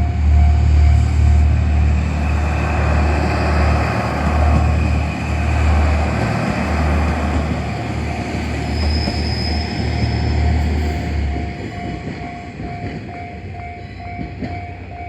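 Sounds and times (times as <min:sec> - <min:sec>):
diesel engine drone: 0:00.0 - 0:08.9
crossing bell ringing: 0:00.0 - 0:15.0
train wheels on rails: 0:00.0 - 0:15.0.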